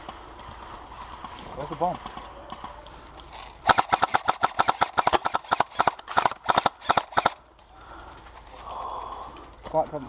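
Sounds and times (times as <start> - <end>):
running footsteps on rough ground: 0.0 - 3.6.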